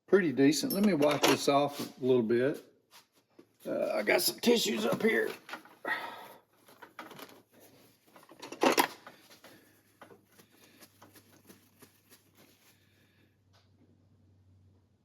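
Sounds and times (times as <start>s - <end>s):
handling noises: 4.3s - 12.8s
tissue rustling and rubbing: 10.3s - 12.8s.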